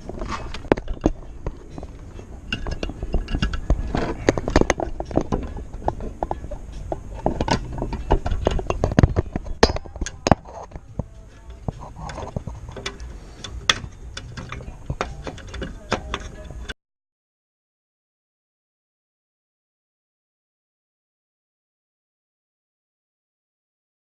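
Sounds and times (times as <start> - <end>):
metal clicks and knocks of tools: 0.2 - 16.7.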